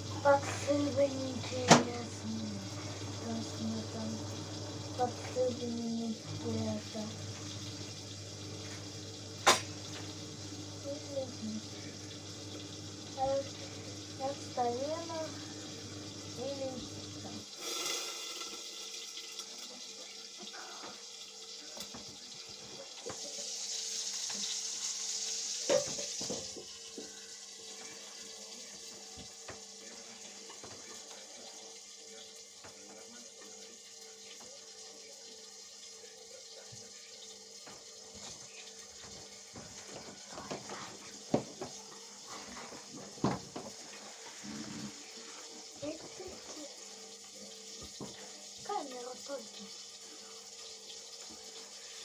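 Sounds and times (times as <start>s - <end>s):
washing machine hum: 0.0s - 19.2s, 37.6s - 52.0s
washing machine water splashing: 0.0s - 52.0s.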